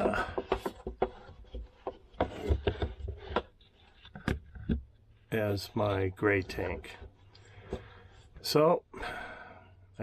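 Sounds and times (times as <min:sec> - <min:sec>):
plastic container knocking: 0:00.0 - 0:03.5.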